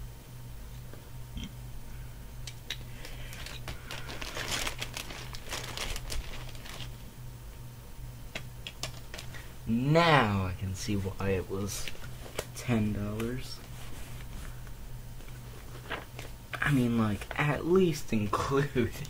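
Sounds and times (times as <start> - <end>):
packaging crinkling: 2.9 - 7.0, 8.6 - 9.5.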